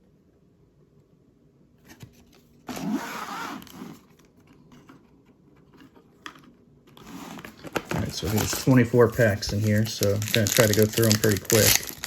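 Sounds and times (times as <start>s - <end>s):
packaging ripping: 7.0s - 12.0s.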